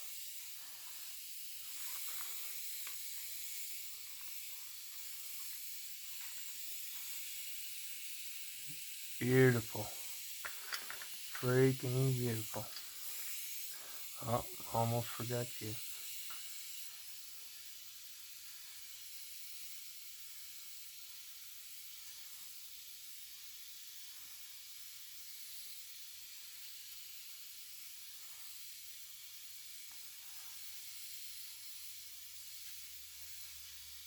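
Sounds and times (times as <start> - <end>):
faint background hiss: 0.0 - 17.7.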